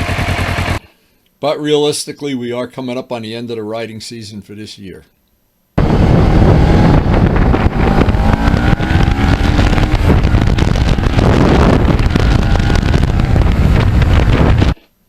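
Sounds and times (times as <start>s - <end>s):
motorcycle engine: 0.0s - 0.9s, 5.8s - 14.8s
wind buffeting microphone: 5.8s - 14.8s.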